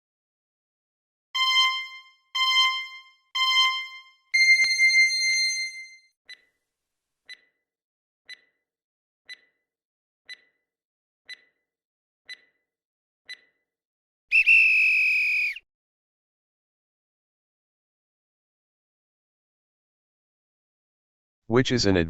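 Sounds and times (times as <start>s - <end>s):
loud electronic buzzer: 1.4s - 4.8s
timer ticks: 1.4s - 5.0s, 6.3s - 6.5s, 7.3s - 7.6s, 8.3s - 8.6s, 9.3s - 9.6s, 10.3s - 10.6s, 11.3s - 11.6s, 12.3s - 12.7s, 13.3s - 13.6s.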